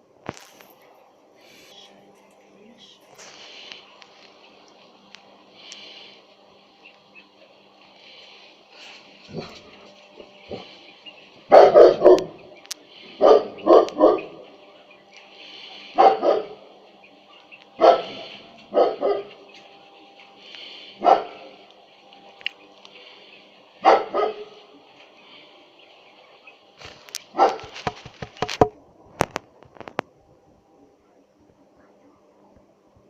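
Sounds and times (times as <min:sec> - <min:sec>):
dog barking: 0:11.5 - 0:12.5, 0:13.1 - 0:14.5, 0:15.9 - 0:16.7, 0:17.3 - 0:19.4, 0:21.0 - 0:21.6, 0:23.8 - 0:24.7, 0:27.3 - 0:27.8.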